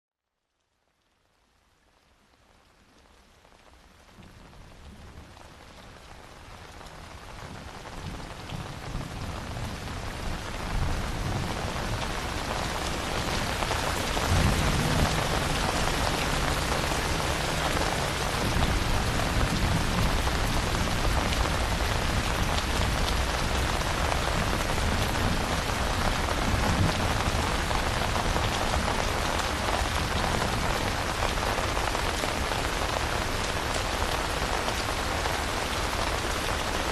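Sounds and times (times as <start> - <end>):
steady rain falling: 0.2 - 36.9
distant thunder rumbling: 10.6 - 28.9.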